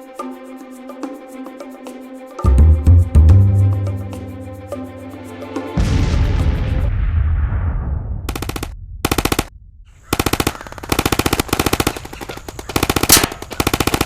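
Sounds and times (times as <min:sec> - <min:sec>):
blast rumble: 0:05.8 - 0:10.1
machine-gun fire bursts: 0:08.3 - 0:09.5, 0:10.1 - 0:14.0.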